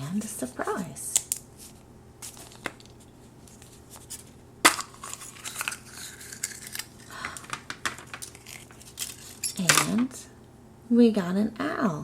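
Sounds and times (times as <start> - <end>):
wrapper crinkling: 1.2 - 9.6.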